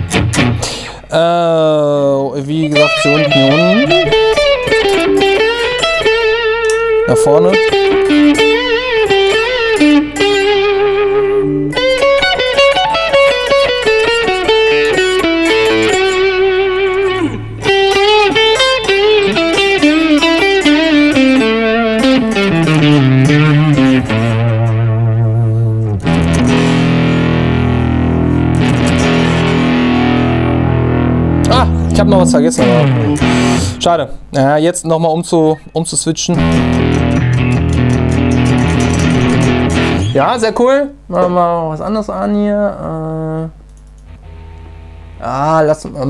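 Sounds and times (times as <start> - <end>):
electric guitar through amp: 0.0 - 1.2, 2.5 - 34.3, 36.4 - 40.4, 42.8 - 45.6.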